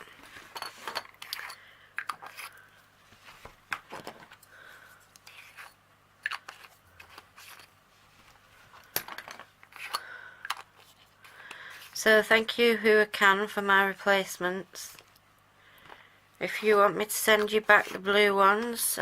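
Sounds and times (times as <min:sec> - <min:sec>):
soft rustling: 0:02.3 - 0:05.8, 0:06.5 - 0:08.8.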